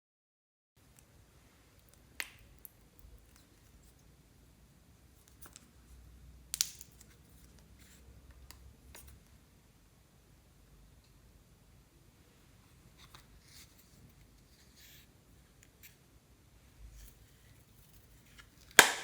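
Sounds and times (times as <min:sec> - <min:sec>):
slime clicking and crackling: 0:06.6 - 0:07.1, 0:18.6 - 0:19.0.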